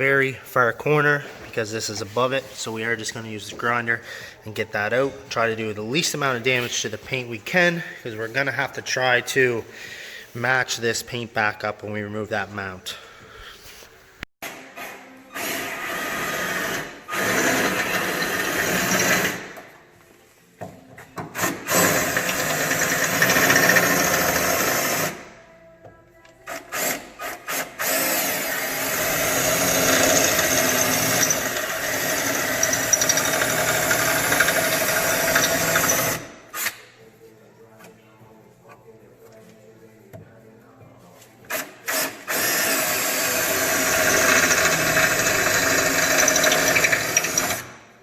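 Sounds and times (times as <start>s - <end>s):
cordless drill boring into steel: 28.2s - 36.2s, 42.3s - 47.6s.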